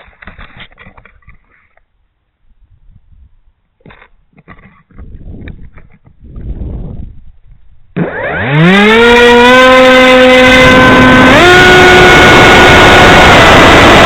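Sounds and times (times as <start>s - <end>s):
electric motor and propeller whine: 7.9s - 14.0s.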